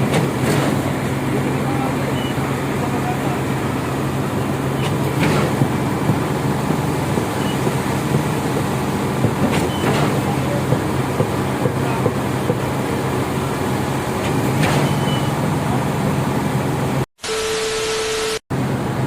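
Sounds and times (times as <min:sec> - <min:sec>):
heavy diesel engine running: 0:00.0 - 0:19.0
sharp knocks: 0:04.8 - 0:12.7.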